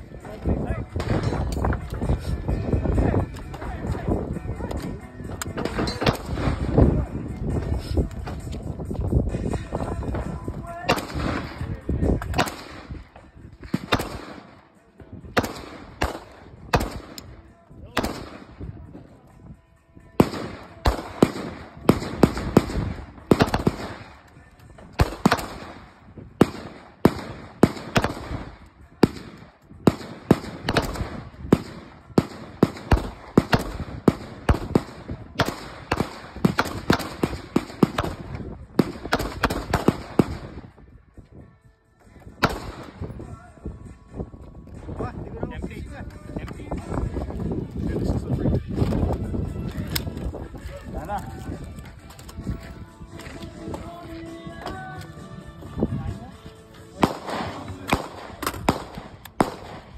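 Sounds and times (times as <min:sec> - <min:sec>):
gunshots: 0:05.5 - 0:06.9, 0:10.8 - 0:14.6, 0:15.3 - 0:17.3, 0:17.9 - 0:18.6, 0:20.2 - 0:24.3, 0:24.9 - 0:40.6, 0:42.4 - 0:43.1, 0:57.0 - 0:59.9.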